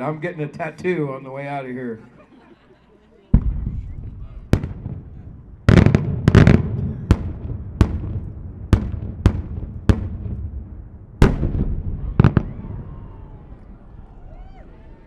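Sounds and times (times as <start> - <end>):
firework bangs: 3.3 - 15.0
firework crackling volley: 3.3 - 15.0
low rumbling echo: 3.4 - 15.0.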